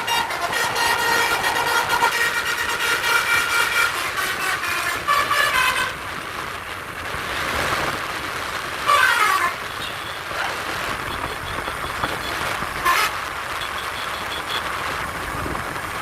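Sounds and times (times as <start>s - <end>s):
musical air horn: 0.0s - 6.0s, 8.9s - 9.6s, 12.8s - 13.2s
vehicle noise: 0.0s - 16.0s.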